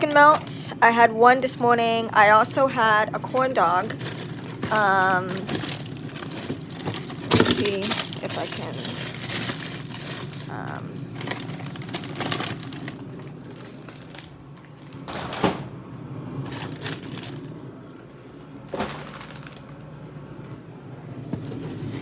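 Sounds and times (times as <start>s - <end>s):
packaging crackling and rustling: 3.2s - 15.1s, 16.4s - 20.6s.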